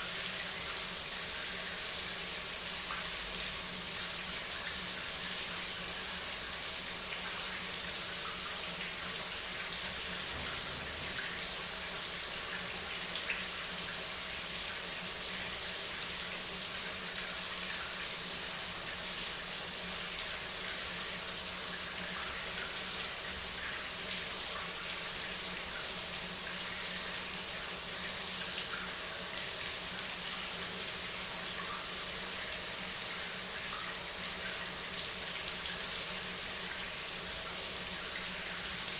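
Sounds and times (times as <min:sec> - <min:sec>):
shower water spraying: 0:08.8 - 0:14.2.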